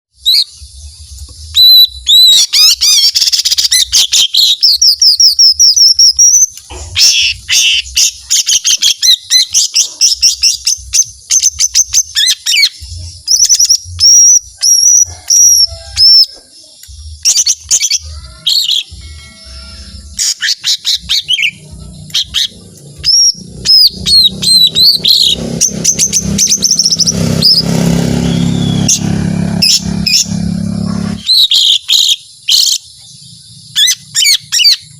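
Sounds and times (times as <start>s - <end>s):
bird singing whistled trills: 0.2s - 30.4s, 31.1s - 34.9s
low hum: 16.8s - 31.3s.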